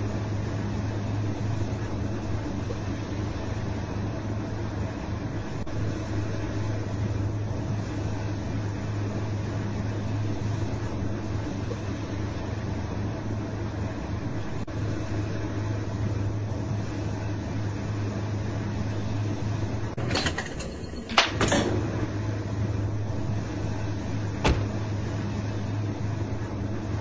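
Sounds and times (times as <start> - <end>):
washing machine motor hum: 0.0 - 27.0
washing machine wash noise: 0.0 - 27.0
sharp clunks: 24.4 - 24.8.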